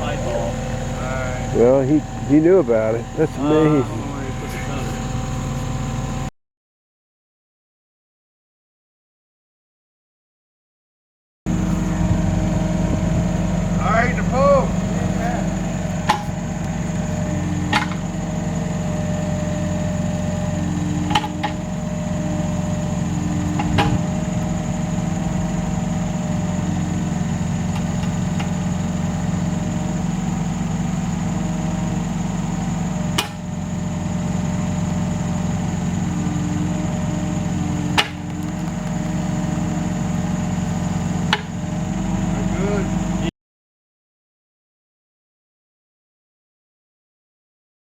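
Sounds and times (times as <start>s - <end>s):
engine running: 0.0s - 6.3s, 11.5s - 43.3s
sharp knocks: 14.6s - 18.3s, 21.0s - 21.8s, 23.4s - 24.2s, 33.1s - 33.5s, 37.9s - 39.0s.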